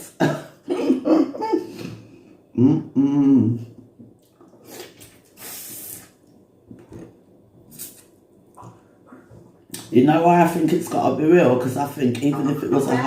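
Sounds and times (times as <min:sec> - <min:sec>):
person humming briefly: 0:02.6 - 0:03.6
mouth slurp: 0:04.4 - 0:06.2.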